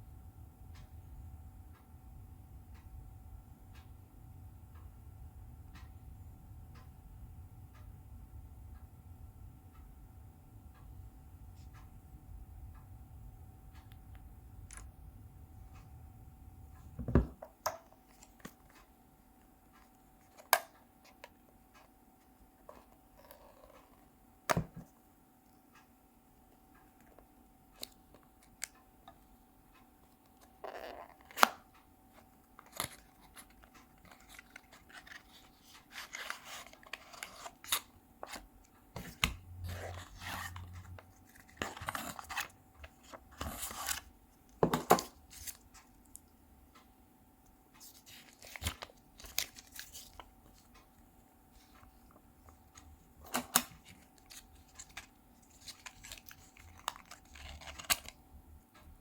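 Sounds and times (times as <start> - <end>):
box clicks and taps: 44.6 - 45.2.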